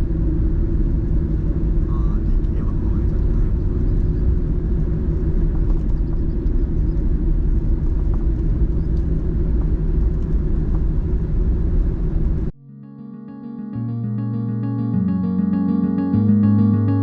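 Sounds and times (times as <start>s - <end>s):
car driving rumble: 0.0s - 12.5s
piano music: 12.6s - 17.0s.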